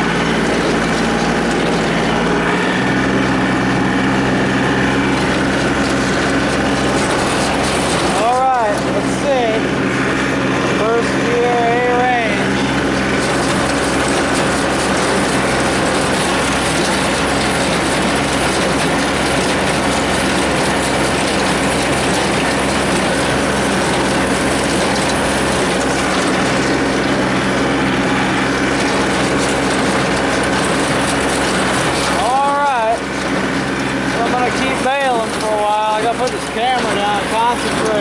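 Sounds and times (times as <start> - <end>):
tractor engine running: 0.0 - 38.0
baler mechanism clattering: 28.4 - 38.0.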